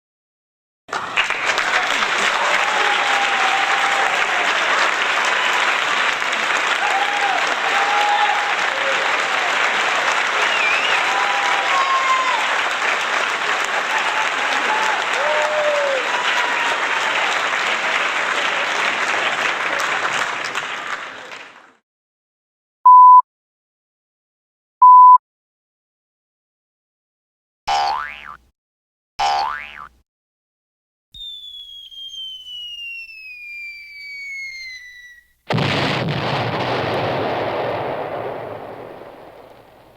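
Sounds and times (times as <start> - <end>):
crowd applause: 0.9 - 21.8
short single-pitch beeps: 22.9 - 23.2, 24.8 - 25.2.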